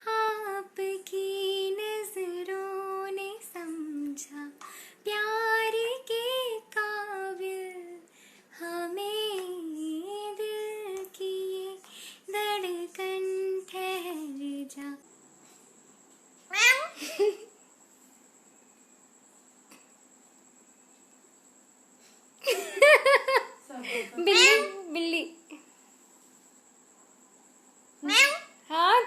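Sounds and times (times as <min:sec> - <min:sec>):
high voice singing: 0:24.2 - 0:25.0.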